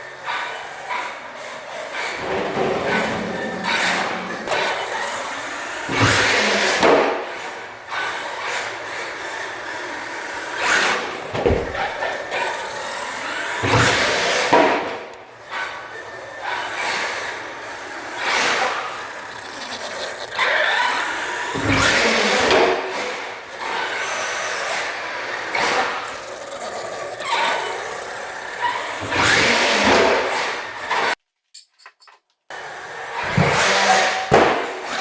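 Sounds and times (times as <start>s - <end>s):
rc truck motor whine: 0.0s - 14.5s, 15.2s - 31.2s
tyre noise: 11.2s - 12.4s.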